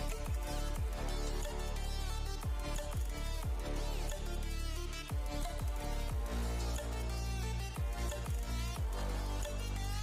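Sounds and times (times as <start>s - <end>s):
electronic music with deep bass: 0.0s - 10.0s
kick drum beats dropping in pitch: 0.3s - 1.1s, 2.4s - 3.8s, 5.1s - 6.5s, 7.8s - 9.1s.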